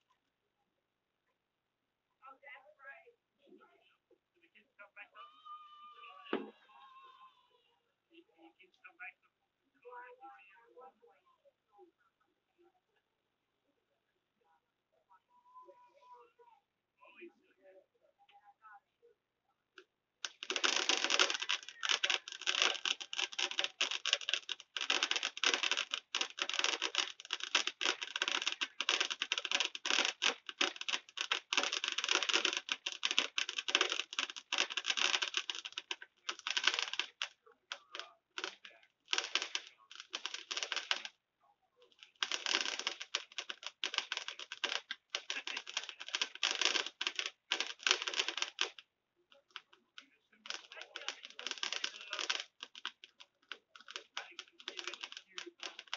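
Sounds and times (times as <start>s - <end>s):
fireworks crackling: 20.2s - 41.1s, 41.8s - 48.8s, 49.4s - 55.9s.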